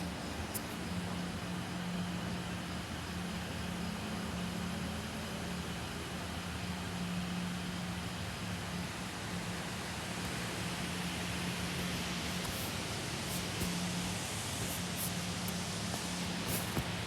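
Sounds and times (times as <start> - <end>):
even hiss: 9.5 - 17.0.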